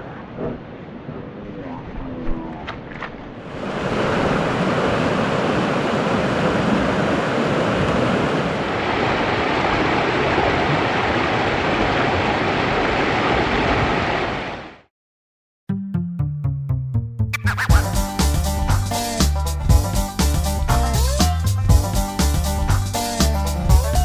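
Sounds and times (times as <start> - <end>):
fast-flowing stream: 3.5 - 14.8.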